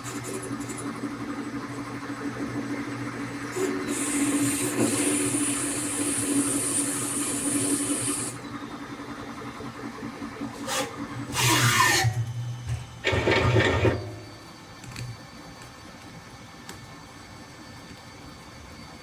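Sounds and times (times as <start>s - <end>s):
lathe cutting hiss and hum: 0.0s - 14.9s
quiet machine hum: 0.0s - 19.0s.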